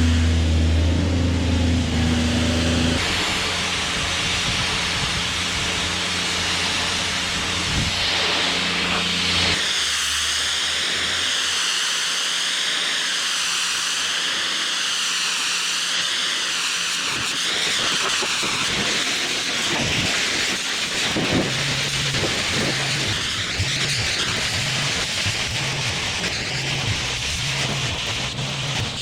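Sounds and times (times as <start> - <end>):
low hum: 0.0 - 11.6, 21.0 - 29.0
pressure washer spray hissing: 0.0 - 29.0.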